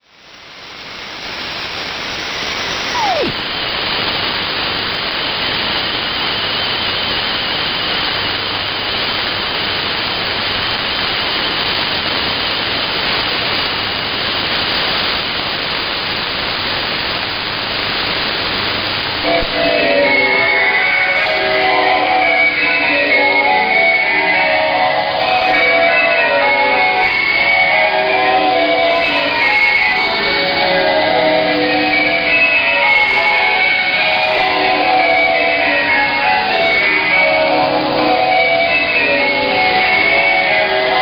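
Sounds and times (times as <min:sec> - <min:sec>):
faint high whistle: 0:00.0 - 0:03.6
radio static hiss: 0:00.0 - 0:37.2
falling whistle sweep: 0:00.2 - 0:03.5.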